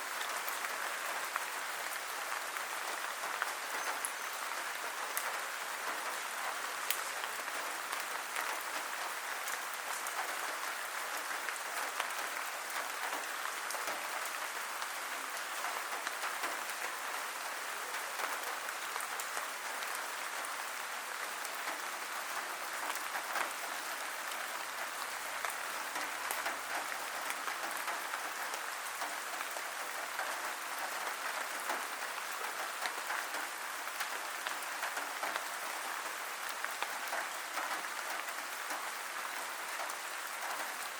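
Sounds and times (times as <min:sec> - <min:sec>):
steady rain patter: 0:00.0 - 0:40.9
sharp raindrop ticks: 0:02.8 - 0:17.1.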